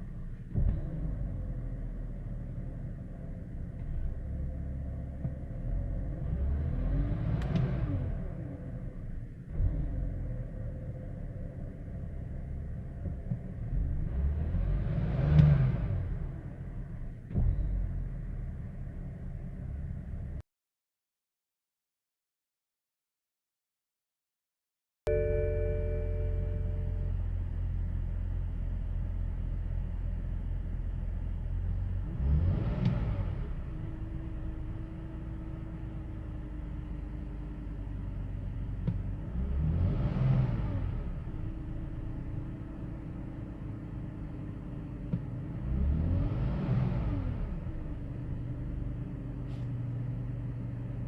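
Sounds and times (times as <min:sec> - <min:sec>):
engine throttle blip: 0:25.1 - 0:30.3
car engine idling: 0:25.1 - 0:32.1, 0:41.0 - 0:46.4, 0:47.2 - 0:51.0.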